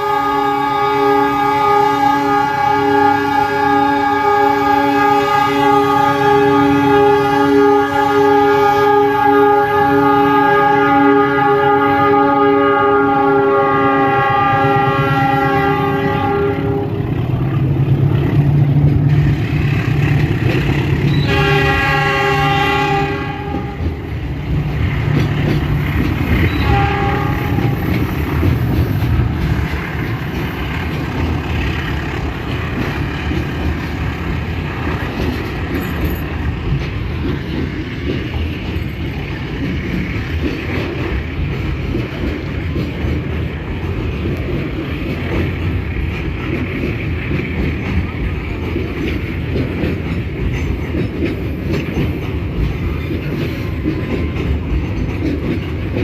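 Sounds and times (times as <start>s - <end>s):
locomotive air horn blasts: 0.0s - 17.1s, 21.1s - 24.1s, 26.4s - 27.9s
train wagons rumbling past: 0.0s - 56.0s.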